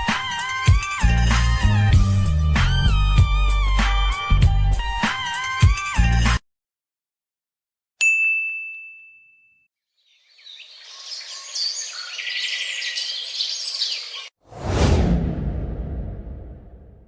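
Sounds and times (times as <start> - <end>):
high ding: 8.0 - 9.7
birds chirping: 10.0 - 14.3.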